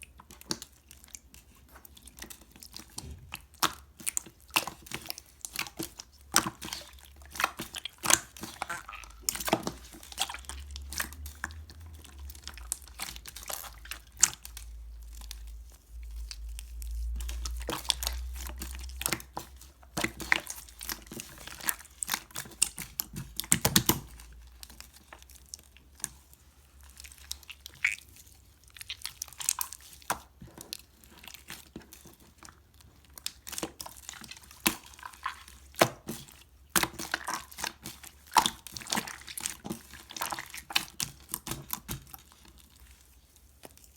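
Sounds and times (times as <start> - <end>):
slime squished by hand: 0.0 - 43.9.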